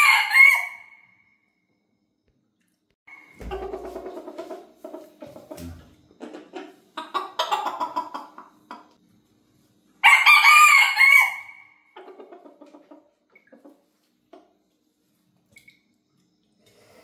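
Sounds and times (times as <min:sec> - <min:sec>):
rooster crowing: 0:00.0 - 0:01.1, 0:10.0 - 0:12.0
chickens clucking: 0:03.1 - 0:09.0, 0:11.9 - 0:14.7.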